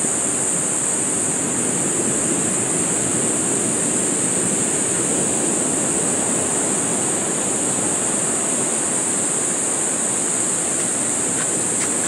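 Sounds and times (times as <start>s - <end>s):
high-pitched insect drone: 9.9s - 12.0s.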